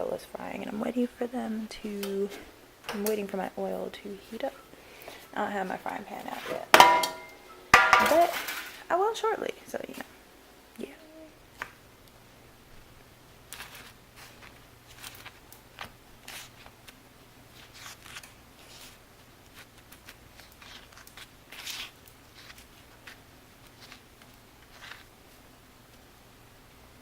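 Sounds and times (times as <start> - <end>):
soft rustles and scrapes: 2.0 - 6.8, 13.5 - 26.1.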